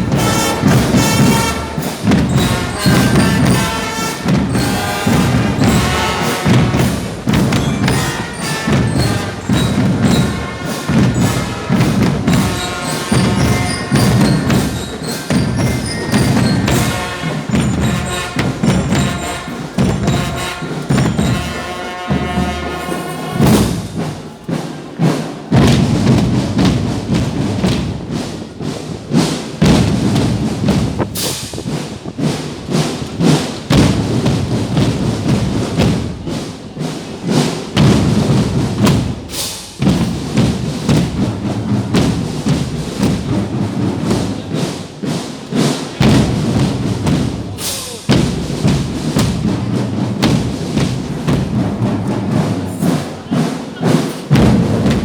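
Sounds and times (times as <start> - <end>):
quick drum beat: 0.0 - 55.0
music melody: 0.1 - 23.8.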